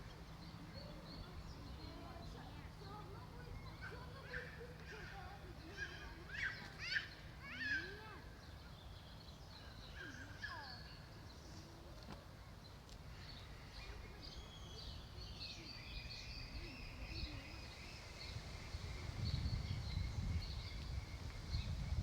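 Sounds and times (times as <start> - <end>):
birds chirping: 0.0 - 22.0
wind rumble on microphone: 16.0 - 22.0.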